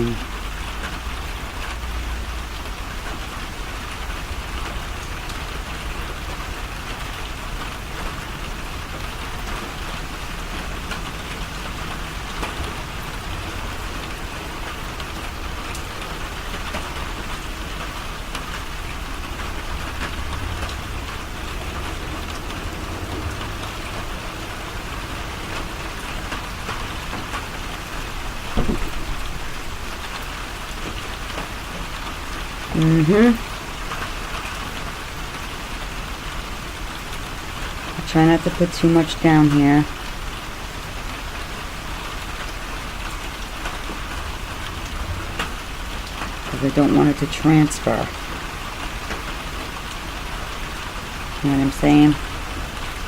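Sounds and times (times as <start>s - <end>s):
rain pattering: 0.0s - 53.0s
short thump: 28.6s - 29.2s.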